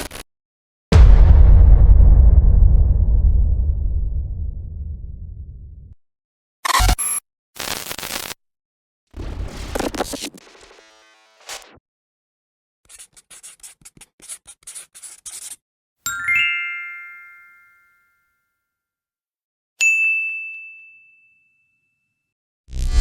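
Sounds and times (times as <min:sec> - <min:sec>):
bright multi-tone ding: 0:16.1 - 0:18.1.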